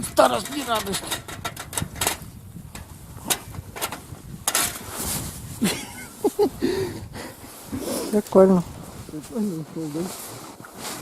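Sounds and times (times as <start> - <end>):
footsteps crunching in deep snow: 4.1 - 5.7, 7.4 - 11.0
brushing crunch in snow: 4.8 - 5.7, 7.4 - 11.0.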